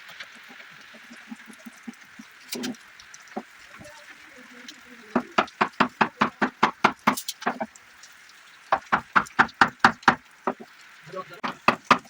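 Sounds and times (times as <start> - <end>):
rapid hammering on wood: 5.1 - 7.7, 8.7 - 10.7, 11.4 - 12.0.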